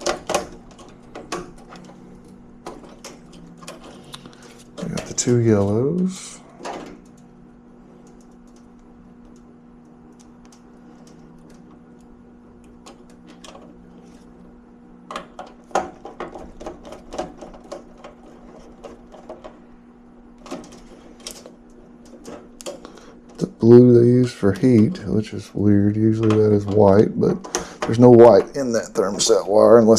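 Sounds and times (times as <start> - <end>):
steady low hum: 0.0 - 29.9.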